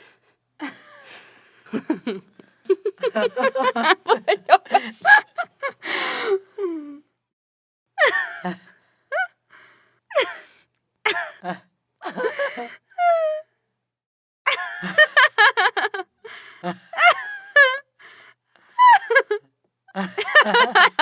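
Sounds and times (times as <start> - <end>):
women laughing: 0.6 - 5.8, 14.5 - 16.0, 20.0 - 21.0.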